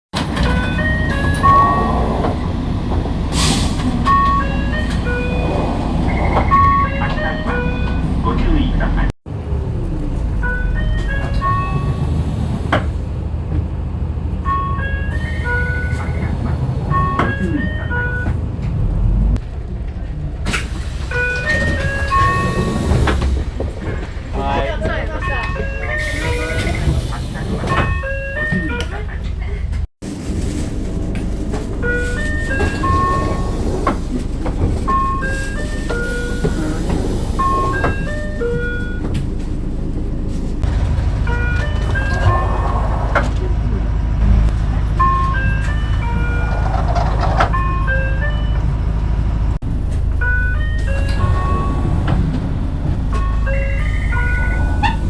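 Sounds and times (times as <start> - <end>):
bus door chime melody: 0.2 - 3.0, 3.8 - 9.1, 10.4 - 12.3, 14.4 - 18.5, 20.6 - 23.4, 24.4 - 29.4, 31.6 - 40.1, 41.2 - 43.2, 44.8 - 49.4, 50.0 - 52.4, 53.0 - 55.0
bus engine rumble: 0.2 - 55.0
diesel bus engine idling: 30.4 - 46.7.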